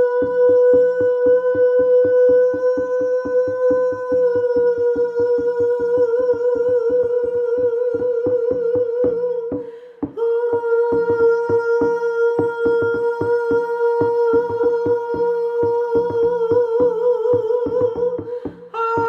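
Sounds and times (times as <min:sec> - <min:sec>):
frame drum beaten fast: 0:10.9 - 0:19.0.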